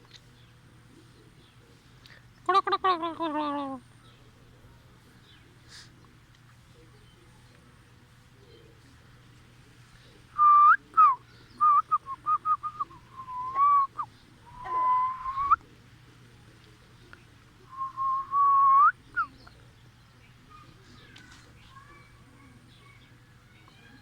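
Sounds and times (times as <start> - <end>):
person whistling: 10.4 - 15.6.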